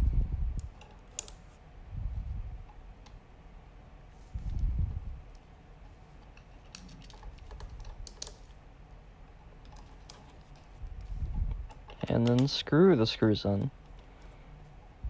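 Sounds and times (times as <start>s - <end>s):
light clicks of screws and plastic case: 6.2s - 8.6s, 9.6s - 12.6s.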